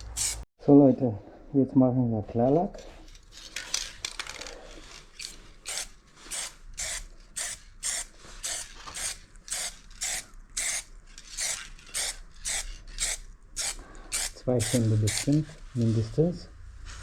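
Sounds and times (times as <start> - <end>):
aerosol can rattling while shaken: 3.3 - 15.4.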